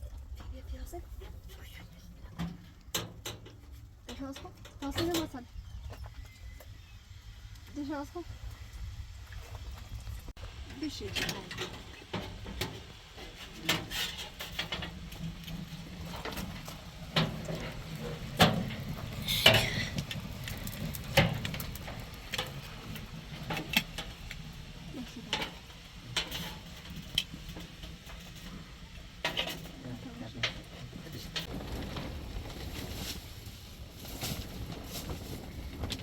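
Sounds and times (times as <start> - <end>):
pots and dishes clinking: 16.0 - 20.1.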